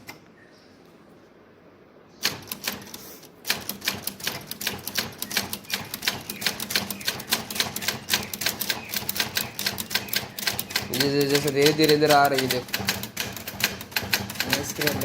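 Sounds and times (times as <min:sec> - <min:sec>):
typewriter key strikes: 0:02.2 - 0:15.0.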